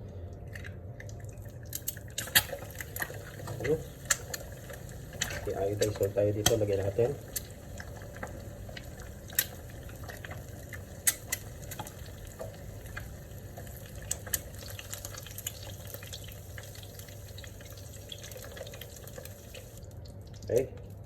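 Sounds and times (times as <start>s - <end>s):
eggs sizzling in oil: 1.7s - 20.0s
oil spattering pops: 1.8s - 13.0s.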